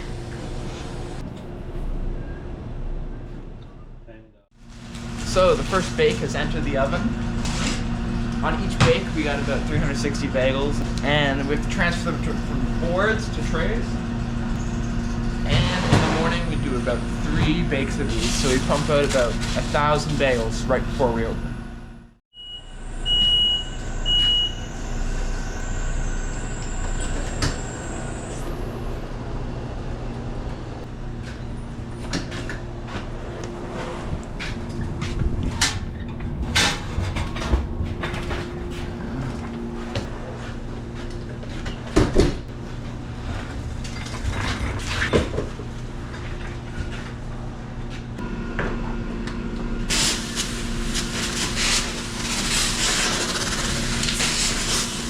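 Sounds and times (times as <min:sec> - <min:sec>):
machine hum: 0:00.0 - 0:55.0.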